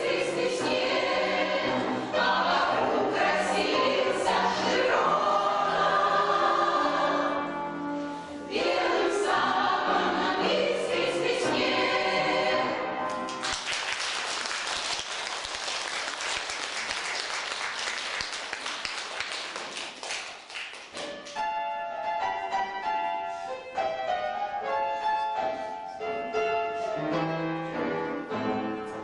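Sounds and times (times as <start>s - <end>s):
choir singing: 0.0s - 13.3s
piano: 0.0s - 29.0s
audience applause: 13.2s - 21.2s.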